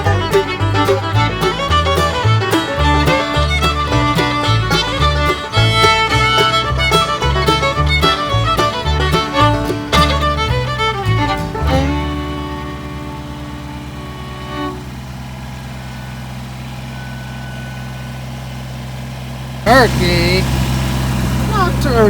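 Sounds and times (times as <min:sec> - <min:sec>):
bouncing bass line: 0:00.0 - 0:14.9
plucked banjo: 0:00.0 - 0:16.1
guitar: 0:00.0 - 0:18.2, 0:19.7 - 0:22.0
fiddle: 0:00.0 - 0:18.4, 0:19.7 - 0:20.5.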